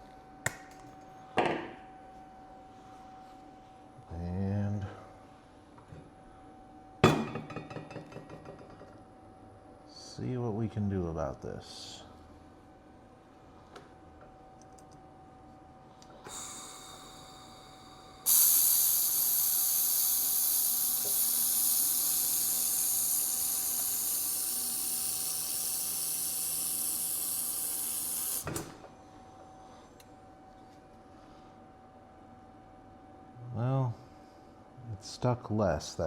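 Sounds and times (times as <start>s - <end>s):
laser welder hissing: 16.3s - 28.6s.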